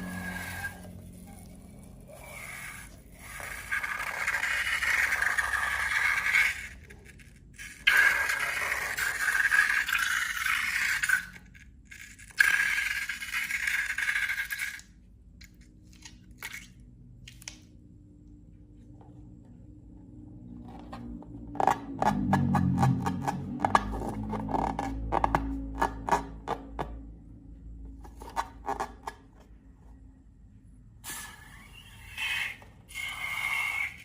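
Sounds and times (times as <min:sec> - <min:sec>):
long scraping sounds: 0:00.0 - 0:11.5.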